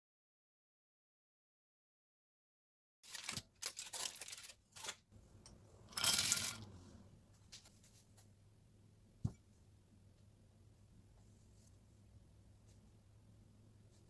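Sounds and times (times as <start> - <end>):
packaging ripping: 3.1 - 5.0
packaging rustling: 3.1 - 5.0.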